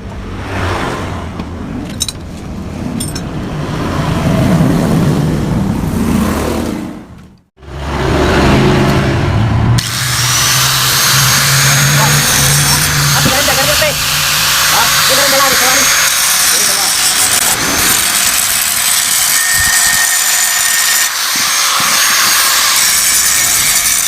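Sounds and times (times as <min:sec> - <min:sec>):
power tool grinding metal: 0:09.8 - 0:24.0.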